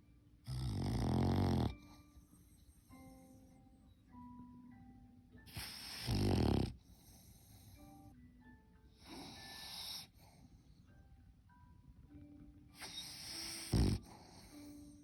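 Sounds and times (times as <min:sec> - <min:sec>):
quiet background music: 0:00.0 - 0:15.0
dog snoring: 0:00.4 - 0:03.4, 0:05.5 - 0:07.8, 0:09.0 - 0:10.5, 0:12.8 - 0:15.0.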